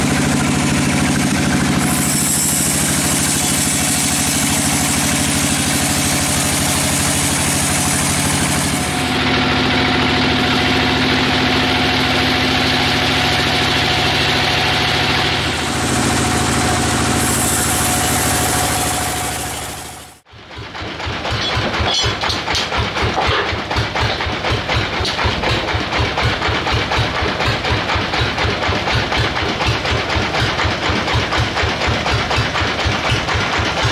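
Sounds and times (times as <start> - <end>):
pulsing machine beat: 0.0 - 33.9
sawmill machinery running: 0.0 - 33.9.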